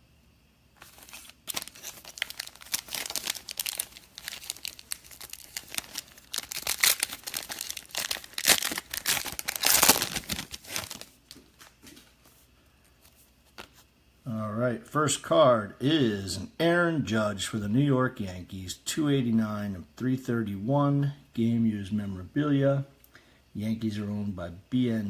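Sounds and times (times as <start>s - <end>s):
plastic wrapping tearing and crumpling: 0.8s - 11.2s.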